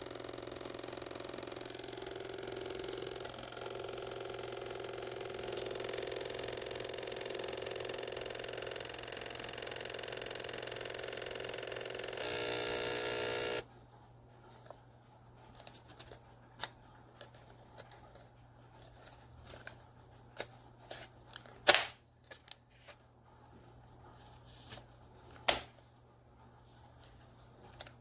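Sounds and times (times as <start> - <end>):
camera printer whirring: 0.0 - 13.7.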